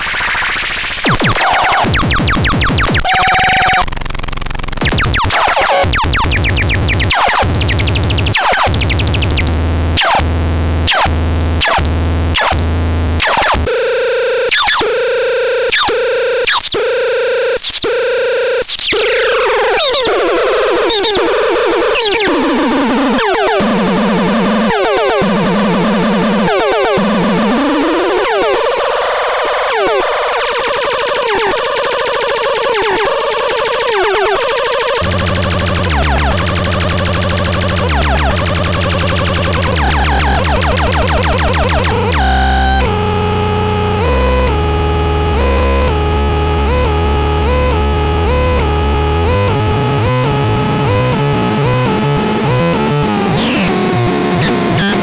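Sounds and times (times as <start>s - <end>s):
electronic signal synthetic tones: 1.0s - 3.8s, 4.8s - 10.2s, 32.7s - 55.0s.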